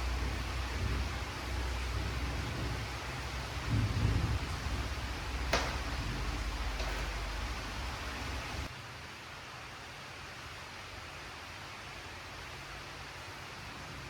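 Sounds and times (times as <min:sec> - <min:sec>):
low thunder rumble: 0:00.0 - 0:08.7
heavy rain hiss: 0:00.0 - 0:14.0.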